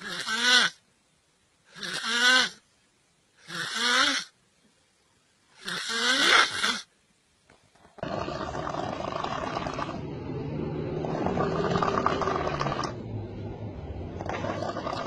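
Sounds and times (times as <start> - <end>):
person snoring: 8.0 - 13.0.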